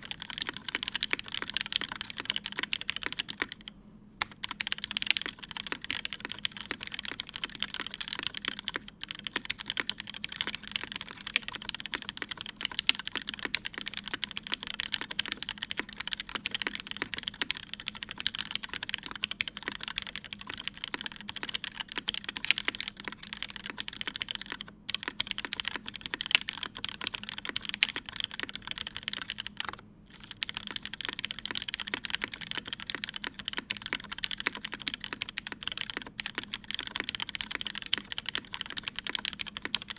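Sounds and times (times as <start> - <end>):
mechanical keyboard typing clacks: 0.0 - 39.9.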